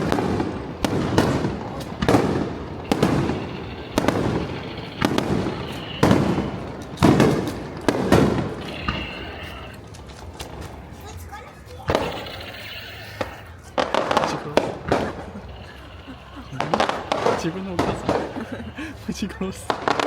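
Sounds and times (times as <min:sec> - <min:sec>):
firework shells bursting: 0:00.0 - 0:20.0
rolling rumble: 0:00.0 - 0:20.0.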